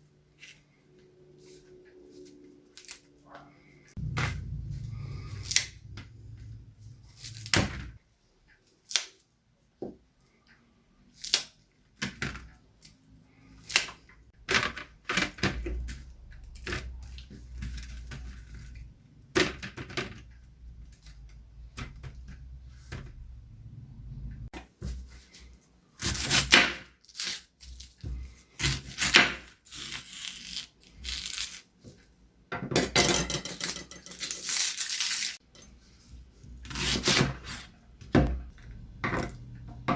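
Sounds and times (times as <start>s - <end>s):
low hum: 3.9s - 8.0s, 23.2s - 24.5s.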